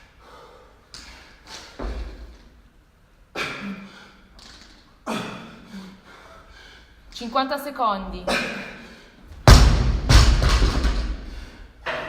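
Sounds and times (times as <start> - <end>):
dull thuds on gym floor: 9.4 - 11.2.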